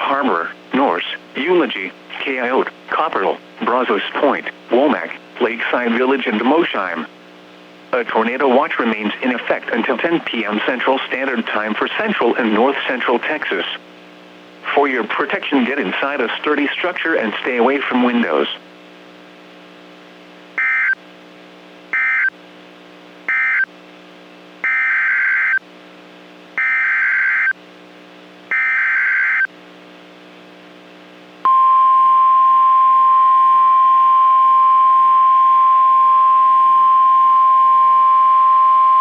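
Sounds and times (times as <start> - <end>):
low steady radio hum: 0.0 - 25.0, 25.6 - 39.0
steady single-pitch alarm tone: 20.6 - 21.0, 21.9 - 22.3, 23.3 - 23.7, 24.6 - 25.6, 26.6 - 27.6, 28.5 - 29.5, 31.5 - 39.0.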